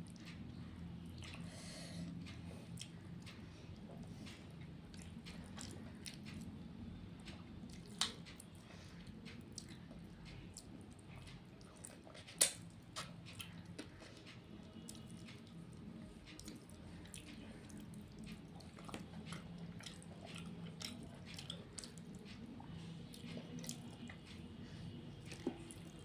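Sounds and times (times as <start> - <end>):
person chewing food: 0.1 - 26.0
wet mouth clicks and smacks: 12.2 - 13.1.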